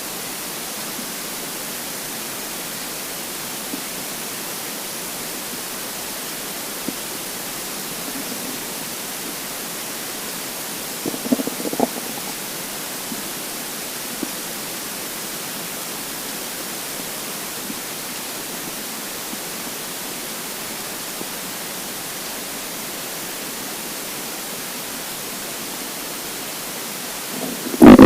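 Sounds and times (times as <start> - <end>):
recording hiss: 0.0 - 28.0
stomach gurgles: 6.8 - 9.4, 10.8 - 14.4, 27.2 - 28.0.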